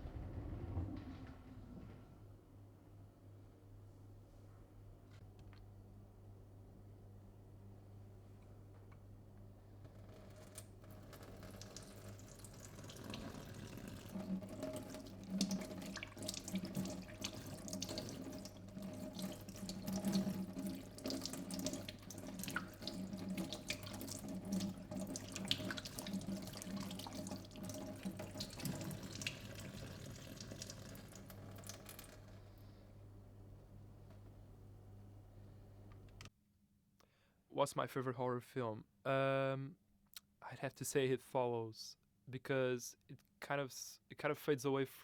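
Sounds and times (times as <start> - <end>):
low electrical hum: 0.0 - 44.6
water running and splashing: 11.1 - 32.3.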